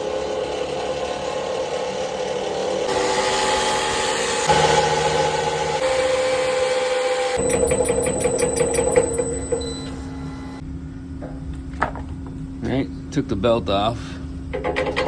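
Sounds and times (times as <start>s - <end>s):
washing machine hum: 7.4s - 10.6s.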